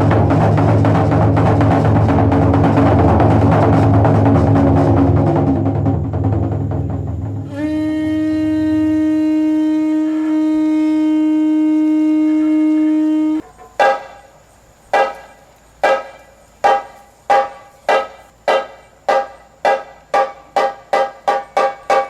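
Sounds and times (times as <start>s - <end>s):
wind instrument low note: 7.0s - 13.4s.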